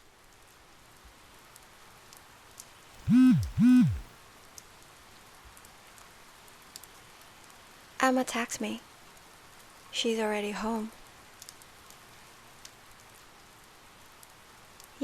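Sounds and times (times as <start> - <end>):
drop ticks: 3.0 - 4.1
phone vibrating: 3.0 - 4.1.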